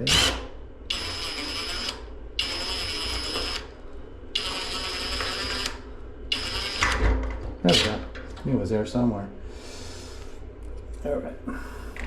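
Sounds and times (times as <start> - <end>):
drill driving a screw into metal: 0.0 - 3.6.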